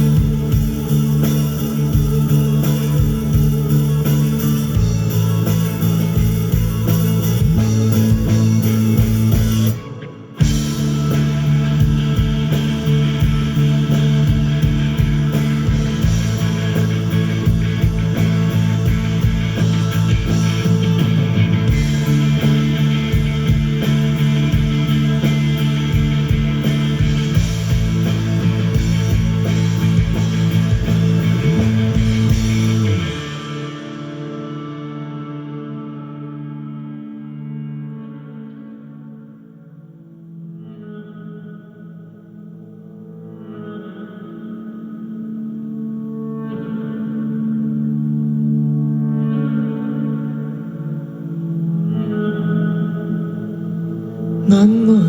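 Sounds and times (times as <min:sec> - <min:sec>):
live rock band playing: 0:00.0 - 0:36.6.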